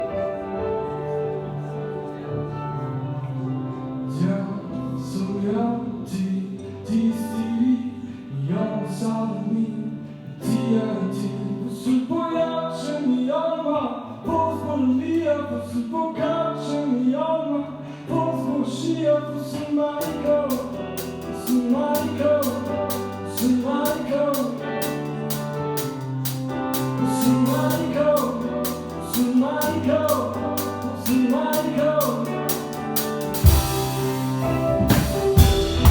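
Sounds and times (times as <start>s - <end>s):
man singing: 3.4s - 33.8s
bass line: 20.1s - 35.9s
ticking percussion beat: 32.5s - 35.9s.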